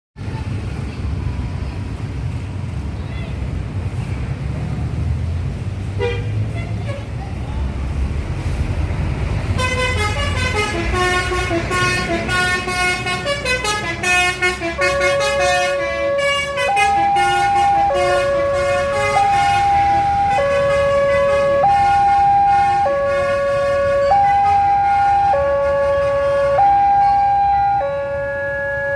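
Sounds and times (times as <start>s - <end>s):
low traffic rumble: 0.2s - 28.9s
horn-like tones: 9.6s - 28.9s
two-tone warning signal: 14.8s - 28.9s.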